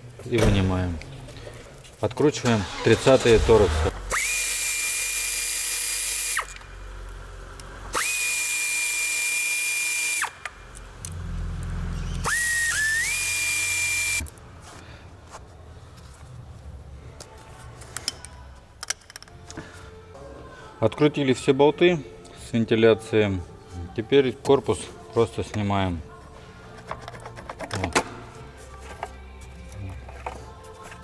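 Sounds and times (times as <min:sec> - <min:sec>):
power drill whine: 0:02.6 - 0:06.6, 0:07.9 - 0:10.4, 0:11.6 - 0:14.3.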